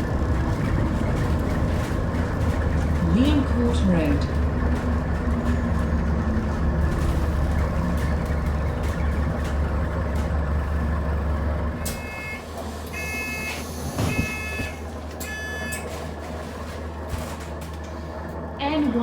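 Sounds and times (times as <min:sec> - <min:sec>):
bus drivetrain droning: 0:00.0 - 0:19.0
door warning beeps: 0:11.8 - 0:15.9.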